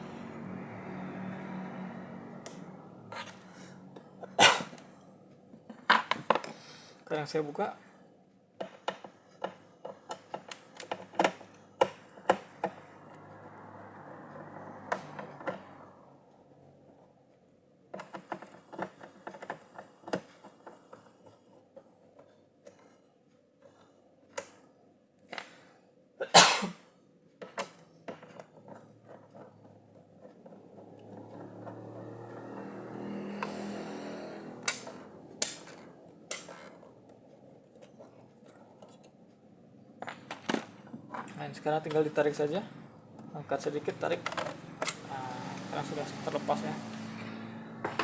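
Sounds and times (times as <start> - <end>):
long scrape: 32.0 - 35.8, 45.0 - 47.8.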